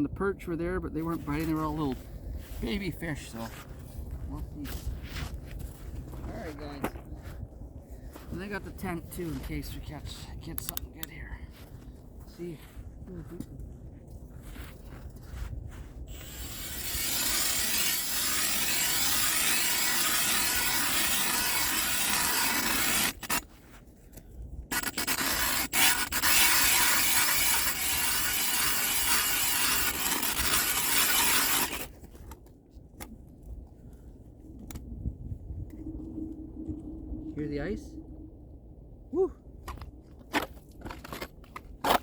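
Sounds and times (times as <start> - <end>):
ice auger grinding through ice: 16.1 - 23.5, 24.7 - 32.0.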